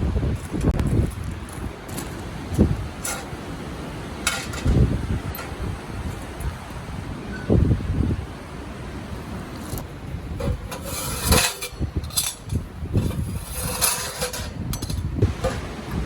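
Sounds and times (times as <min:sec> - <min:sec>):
steady background noise: 0:00.0 - 0:16.0
scrapes and rustling: 0:00.3 - 0:06.7, 0:09.6 - 0:16.0.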